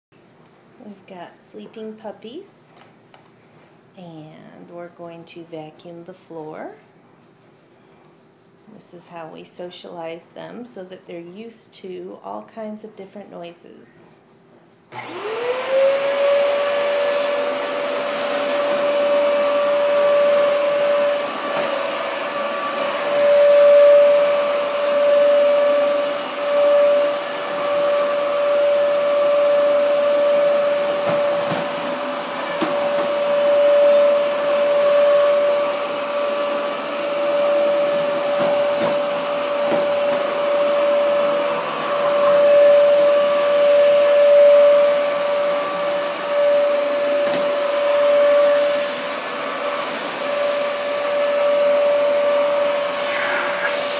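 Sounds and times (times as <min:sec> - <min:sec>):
vacuum cleaner whining: 0:14.9 - 0:53.9.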